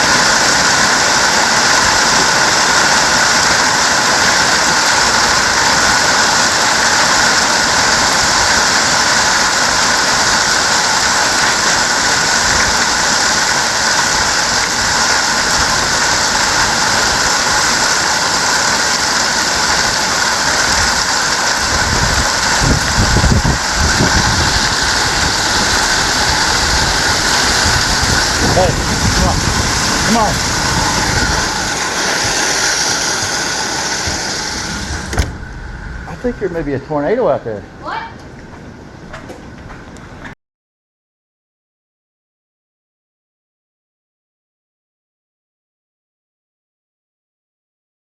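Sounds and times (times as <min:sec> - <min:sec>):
hail and rain pelting: 0:00.0 - 0:35.2
low rumble: 0:20.7 - 0:40.2.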